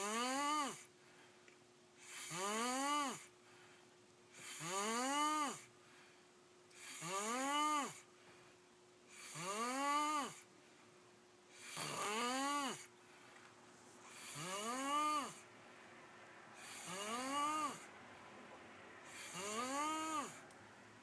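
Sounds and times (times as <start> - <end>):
boy snoring: 0.0 - 0.9, 2.0 - 3.3, 4.4 - 5.7, 6.8 - 8.1, 9.1 - 10.4, 11.5 - 12.9, 14.1 - 15.4, 16.6 - 17.9, 19.0 - 20.5.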